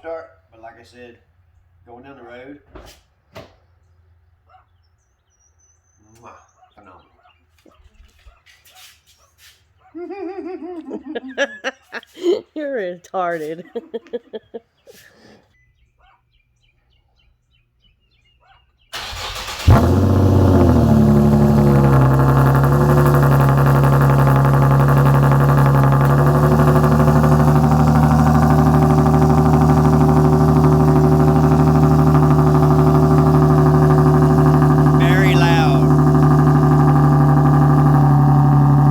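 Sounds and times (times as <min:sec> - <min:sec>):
starter motor cranking: 0:19.0 - 0:21.2
car engine starting and idling: 0:19.0 - 0:38.9.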